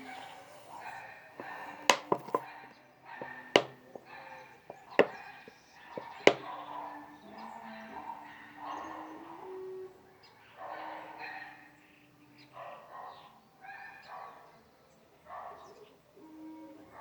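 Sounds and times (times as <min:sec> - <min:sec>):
sharp knocks and clicks: 0:01.4 - 0:02.4, 0:03.6 - 0:04.1, 0:04.7 - 0:05.2, 0:06.0 - 0:06.5.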